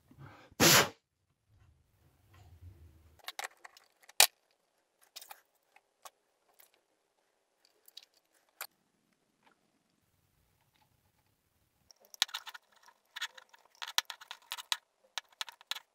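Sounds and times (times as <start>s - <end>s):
clicks and taps of hard parts: 11.9s - 15.9s.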